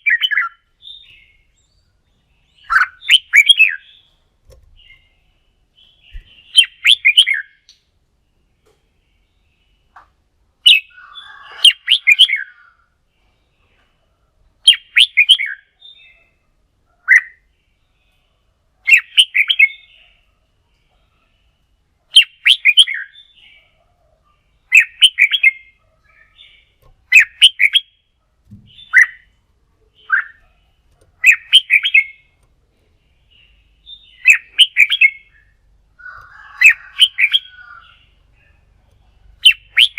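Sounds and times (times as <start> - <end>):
bulbul warbling song: 24.7 - 28.0, 31.0 - 32.4, 33.9 - 38.6, 39.2 - 39.9.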